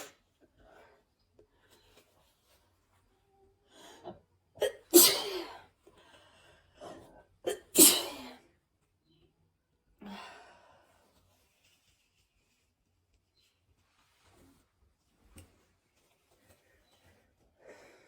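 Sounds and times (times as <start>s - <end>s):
man sneezing: 4.6s - 5.6s.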